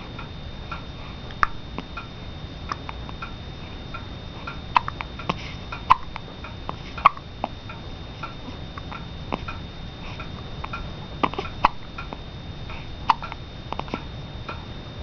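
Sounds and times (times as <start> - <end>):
baby hiccuping: 11.2 - 11.8, 13.1 - 13.3.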